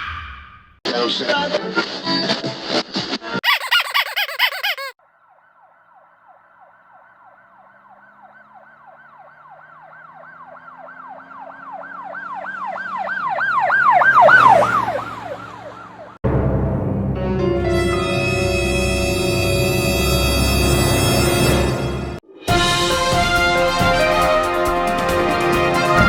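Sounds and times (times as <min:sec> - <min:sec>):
siren yelping: 0:03.4 - 0:16.2
loud ominous music: 0:16.2 - 0:26.0.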